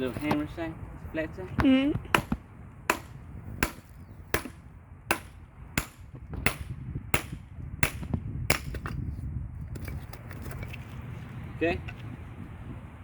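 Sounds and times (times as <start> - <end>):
sledgehammer striking axe head: 2.1 - 9.0.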